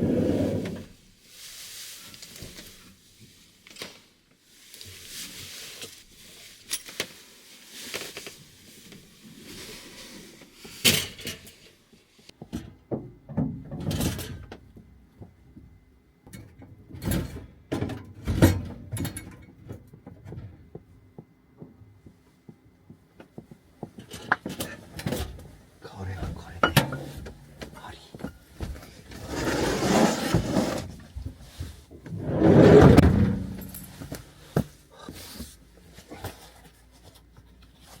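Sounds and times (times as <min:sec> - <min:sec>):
heavy thumps: 0:32.1 - 0:34.8.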